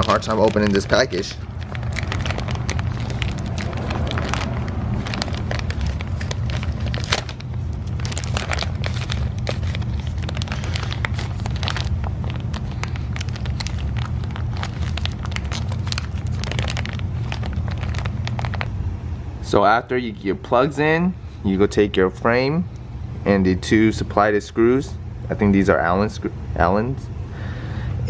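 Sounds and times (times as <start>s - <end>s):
plastic packaging crinkling: 0.0s - 18.7s
steady low hum: 0.0s - 28.0s.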